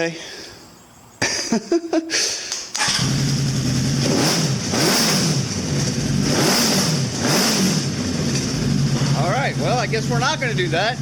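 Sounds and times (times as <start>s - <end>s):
motorcycle engine starting and revving: 2.7s - 11.0s.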